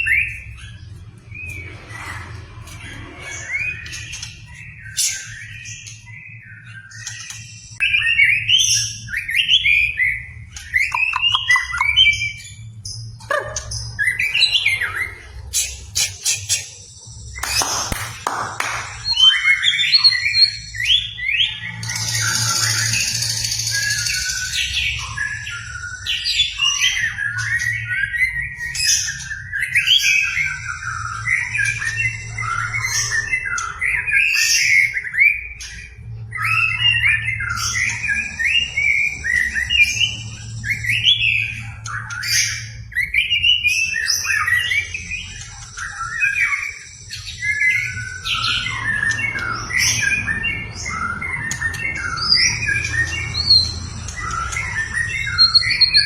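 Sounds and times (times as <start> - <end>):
bird singing whistled phrases: 4.8 - 12.4.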